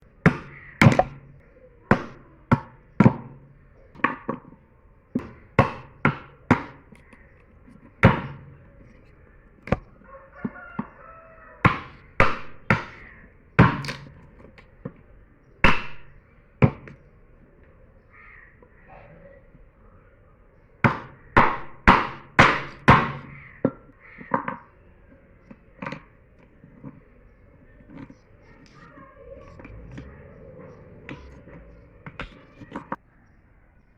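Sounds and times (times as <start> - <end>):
blade chopping hard wood: 0.2 - 1.3, 5.1 - 7.0, 8.0 - 8.6, 11.6 - 13.0, 13.6 - 14.2, 15.6 - 17.0, 20.8 - 24.7.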